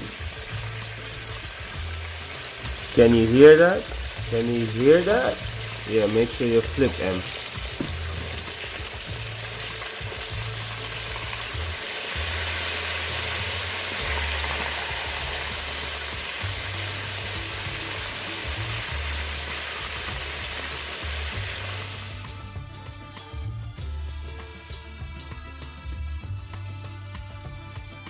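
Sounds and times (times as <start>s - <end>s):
chicken deep-frying sizzle: 0.0s - 22.4s
background music with low bass: 0.0s - 28.0s.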